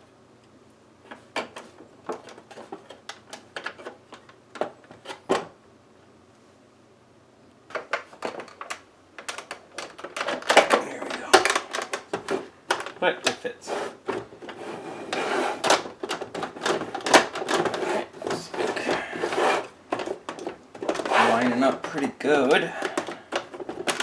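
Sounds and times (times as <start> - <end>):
plastic toy parts clicking: 7.7 - 13.4.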